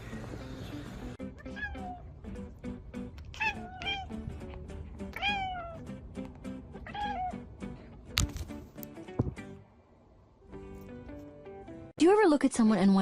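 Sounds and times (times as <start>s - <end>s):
cat meowing: 1.2s - 2.1s, 3.2s - 4.2s, 5.1s - 6.0s, 6.8s - 7.5s.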